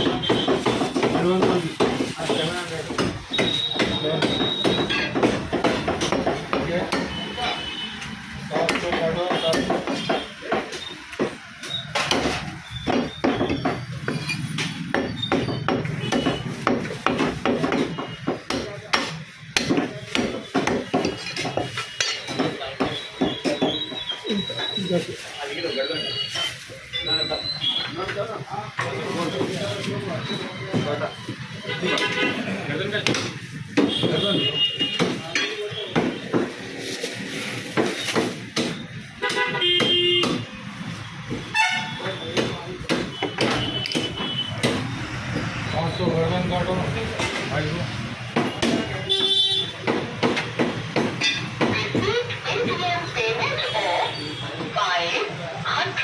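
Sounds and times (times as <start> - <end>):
cleaver chopping meat on block: 2.9 - 7.2, 8.6 - 23.8, 37.7 - 40.5, 42.4 - 44.9, 48.3 - 48.9.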